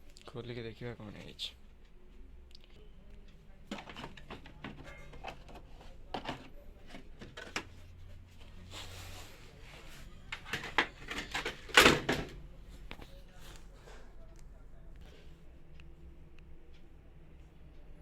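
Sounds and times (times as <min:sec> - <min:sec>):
clicks and knocks of handling: 0:01.8 - 0:08.0, 0:10.3 - 0:13.1.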